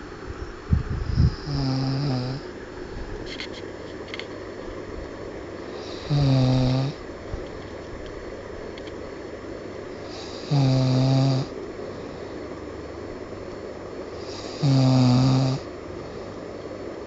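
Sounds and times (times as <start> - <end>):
man snoring: 1.1 - 2.4, 5.7 - 7.0, 10.0 - 11.6, 14.2 - 15.7.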